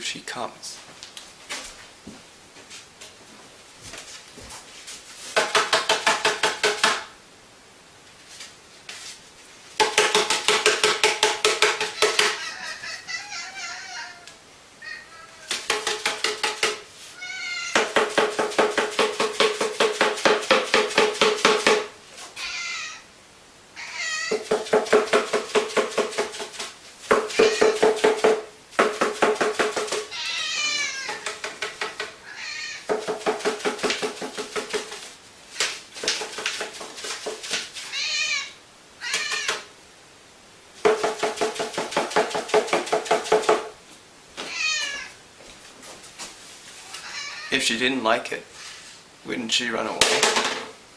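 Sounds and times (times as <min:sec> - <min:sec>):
cardboard tube hollow drumming: 0:05.3 - 0:07.0, 0:09.8 - 0:12.5, 0:15.5 - 0:16.9, 0:17.7 - 0:22.0, 0:24.3 - 0:30.2, 0:31.0 - 0:32.2, 0:32.8 - 0:37.8, 0:40.8 - 0:43.7
cat meowing: 0:11.9 - 0:15.5, 0:17.2 - 0:17.8, 0:22.4 - 0:23.1, 0:23.8 - 0:24.5, 0:27.3 - 0:27.9, 0:30.1 - 0:31.3, 0:32.2 - 0:32.9, 0:37.8 - 0:39.7, 0:44.4 - 0:45.2, 0:46.8 - 0:47.6.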